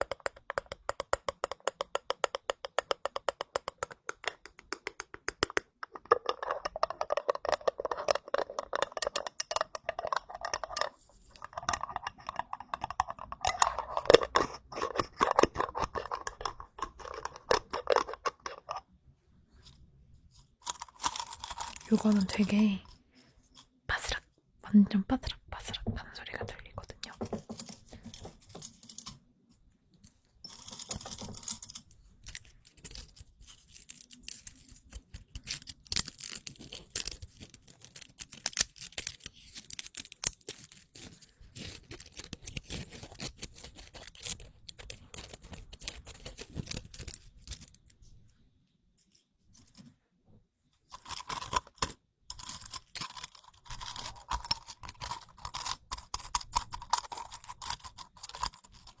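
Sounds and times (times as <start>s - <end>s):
crinkly object crackling: 20.2s - 24.1s, 25.2s - 48.4s, 50.8s - 59.0s.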